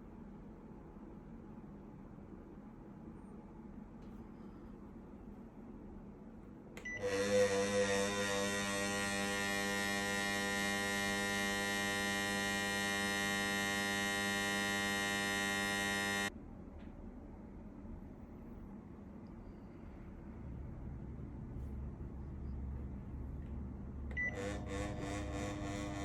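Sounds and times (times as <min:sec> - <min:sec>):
fan humming: 0:06.6 - 0:16.3, 0:20.2 - 0:26.0.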